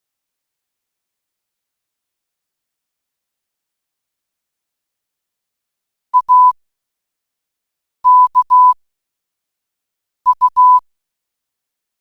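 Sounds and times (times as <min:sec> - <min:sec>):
morse code beeps: 0:06.2 - 0:06.6, 0:08.1 - 0:08.8, 0:10.3 - 0:10.8.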